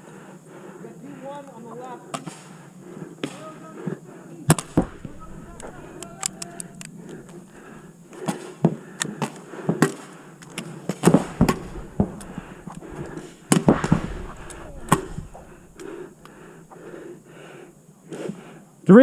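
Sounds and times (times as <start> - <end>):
paintball pistols popping: 4.5 - 17.0.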